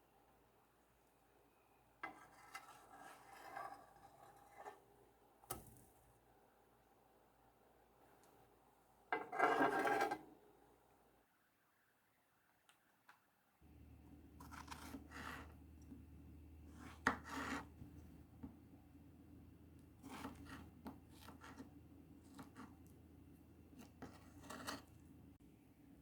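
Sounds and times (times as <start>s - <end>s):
kitchen utensils scraping: 9.2s - 10.3s, 16.8s - 17.7s
low steady hum: 13.6s - 26.0s.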